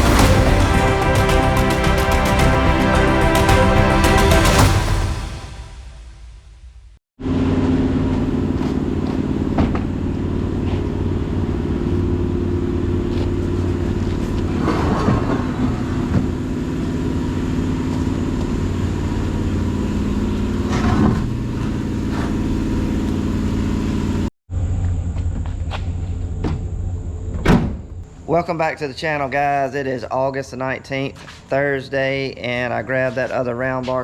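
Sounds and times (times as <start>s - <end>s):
farm machine engine running: 0.0s - 5.4s, 15.3s - 24.3s.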